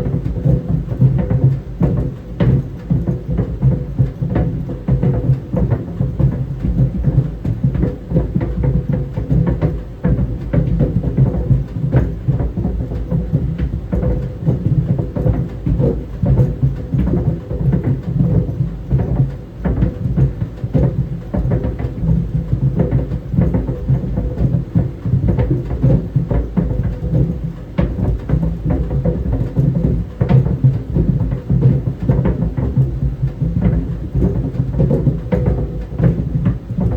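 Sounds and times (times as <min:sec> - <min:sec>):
balls thudding in clothes dryer: 0:00.0 - 0:36.9
dryer low rumble: 0:00.0 - 0:36.9.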